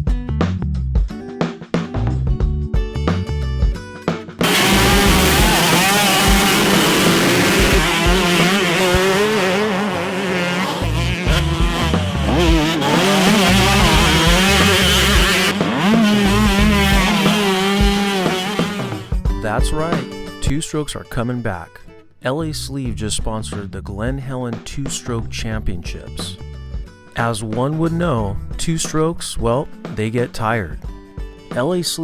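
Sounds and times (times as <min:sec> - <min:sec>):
motocross bike engines revving: 0:04.4 - 0:19.2.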